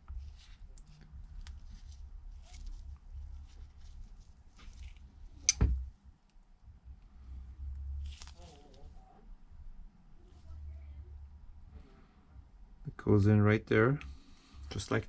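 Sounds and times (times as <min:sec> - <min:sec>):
small clicks and soft scraping: 0:00.0 - 0:05.6, 0:06.2 - 0:09.2.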